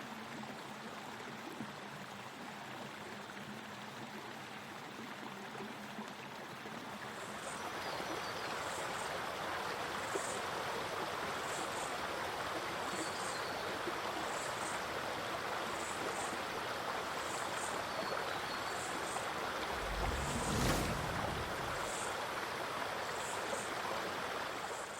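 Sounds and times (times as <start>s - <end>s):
low rumble: 19.6s - 22.1s.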